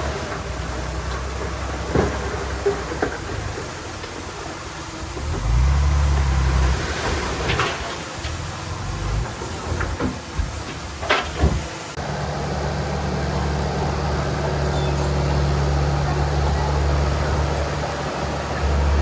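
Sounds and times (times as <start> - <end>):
heavy diesel engine droning: 0.0 - 19.0.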